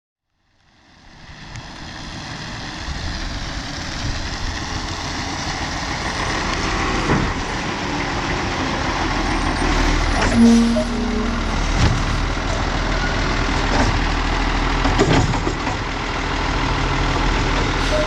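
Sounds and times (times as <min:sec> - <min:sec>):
garbage truck engine rumble: 0:01.2 - 0:18.0.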